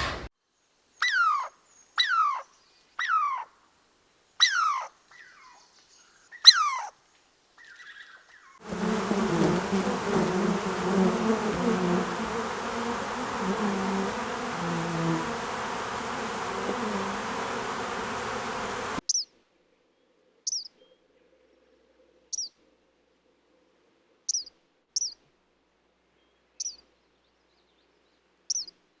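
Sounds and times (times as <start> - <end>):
insects buzzing: 8.6 - 19.0.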